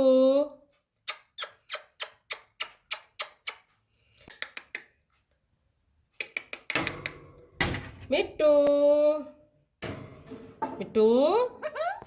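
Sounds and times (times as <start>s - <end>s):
sharp clicks: 4.3s - 5.0s, 6.2s - 7.2s.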